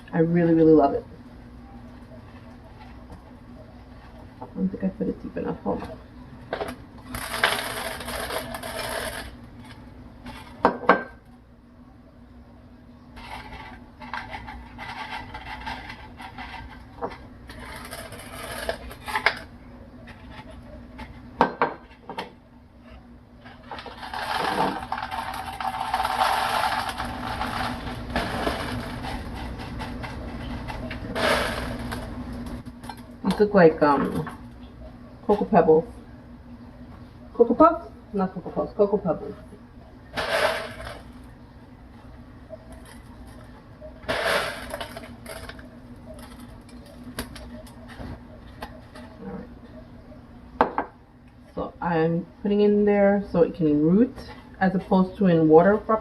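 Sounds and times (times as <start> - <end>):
clay pebbles rattling: 23.6 - 32.1.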